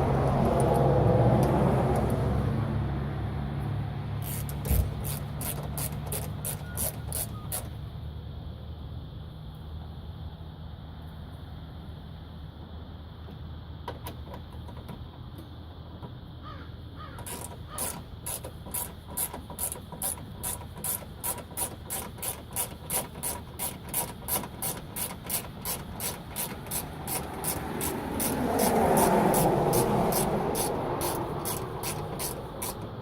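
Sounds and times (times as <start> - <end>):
ratchet clicking: 4.2 - 7.8, 17.2 - 33.0.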